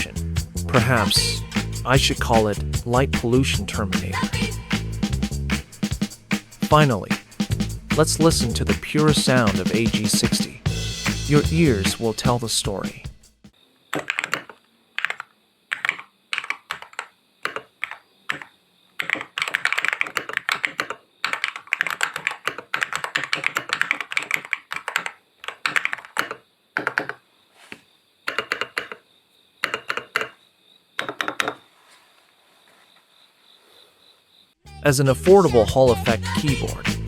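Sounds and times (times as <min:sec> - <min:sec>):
keyboard typing: 0:13.9 - 0:27.2, 0:28.3 - 0:29.0, 0:29.6 - 0:30.4, 0:31.0 - 0:31.6.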